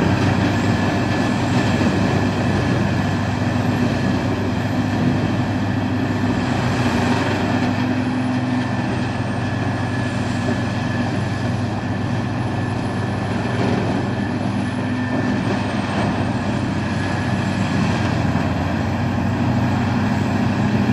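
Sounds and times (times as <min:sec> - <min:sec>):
wood chipper running: 0:00.0 - 0:20.9.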